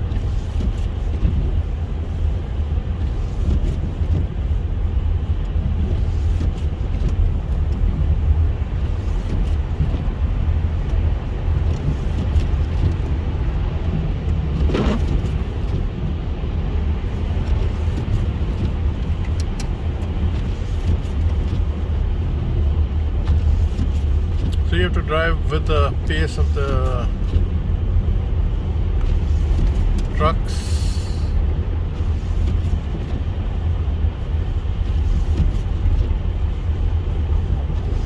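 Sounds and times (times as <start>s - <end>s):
car driving rumble inside cabin: 0.0s - 38.0s.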